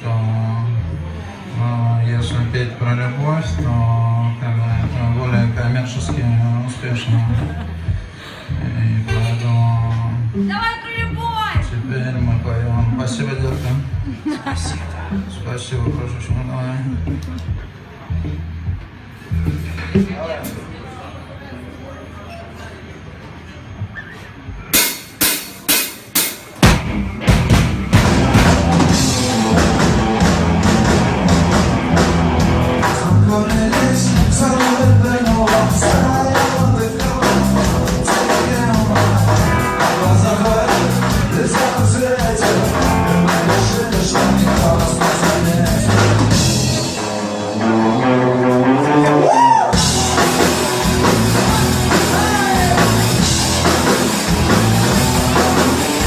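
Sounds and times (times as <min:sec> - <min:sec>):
live rock band playing: 0:24.7 - 0:56.0
sharp drum hits: 0:24.8 - 0:29.0.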